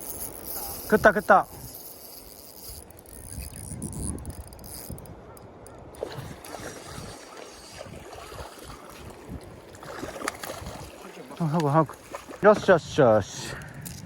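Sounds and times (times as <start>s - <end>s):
moving water: 0.0s - 14.0s
wind rumbling on microphone: 2.6s - 11.0s, 12.3s - 14.0s.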